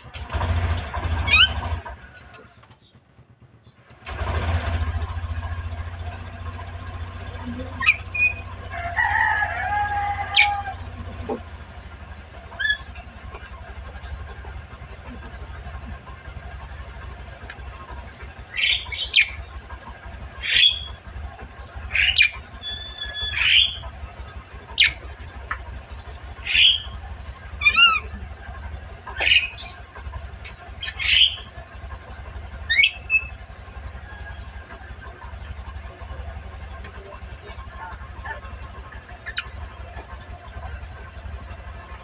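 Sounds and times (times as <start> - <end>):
bird squawking and whistling: 1.2 - 1.6, 7.5 - 8.7, 9.9 - 10.9, 12.4 - 13.1, 18.5 - 19.5, 20.3 - 21.0, 21.8 - 23.9, 24.7 - 25.1, 26.4 - 27.0, 27.6 - 28.2, 29.2 - 29.9, 30.7 - 31.5, 32.6 - 33.4, 39.2 - 39.6.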